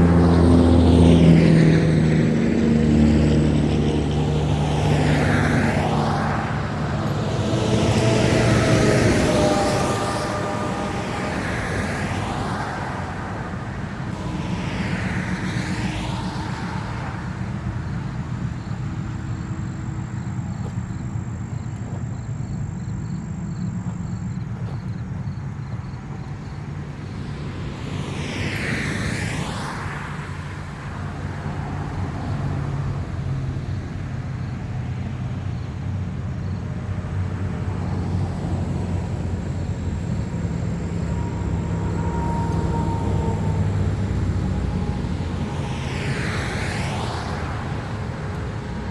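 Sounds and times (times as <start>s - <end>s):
vehicle swishing past: 0.0s - 19.8s, 37.4s - 48.9s
traffic rumble: 0.0s - 48.9s.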